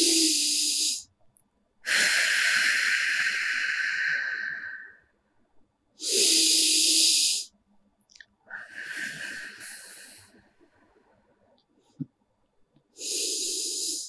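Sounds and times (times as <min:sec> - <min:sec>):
woman breathing in through nose: 0:01.9 - 0:05.0, 0:06.0 - 0:07.5, 0:08.5 - 0:10.5, 0:13.0 - 0:14.0.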